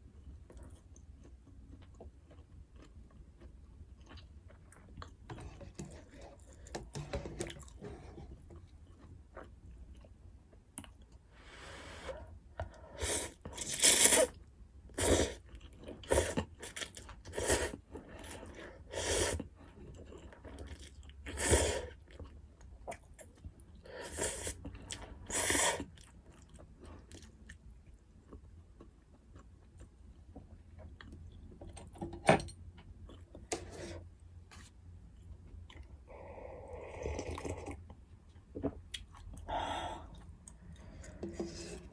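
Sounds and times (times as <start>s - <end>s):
chewing and crunching food: 0.0s - 11.4s, 12.2s - 32.0s, 32.7s - 33.6s, 34.5s - 41.9s.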